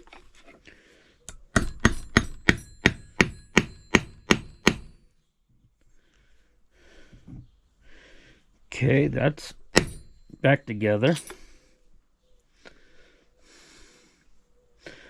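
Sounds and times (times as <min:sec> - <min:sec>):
hammer tapping on steel: 0:01.3 - 0:05.0, 0:09.7 - 0:10.4.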